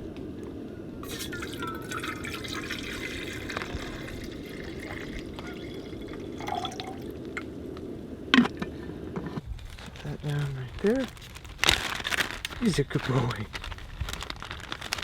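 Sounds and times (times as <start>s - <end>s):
water pouring into a pot: 1.0s - 7.5s.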